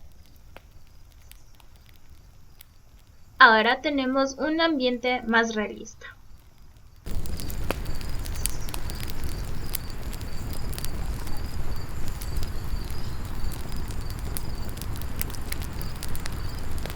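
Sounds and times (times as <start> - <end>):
fire crackling and popping: 0.0 - 16.9
insect chirping: 0.0 - 16.9.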